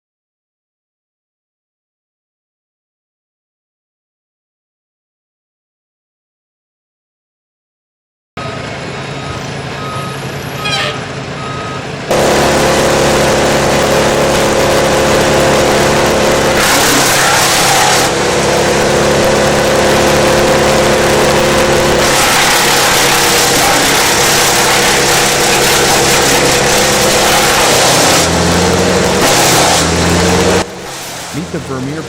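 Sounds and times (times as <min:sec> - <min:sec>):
reversing alarm beeping: 0:08.4 - 0:16.5
heavy diesel machinery running: 0:08.4 - 0:32.0
wood chipper working: 0:08.4 - 0:32.0.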